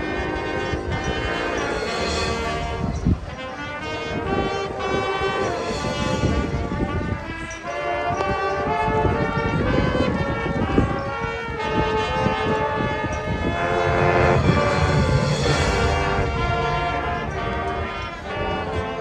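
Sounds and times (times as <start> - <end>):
drumline percussion: 0.0 - 7.4, 13.7 - 19.0
brass band chords: 0.0 - 19.0.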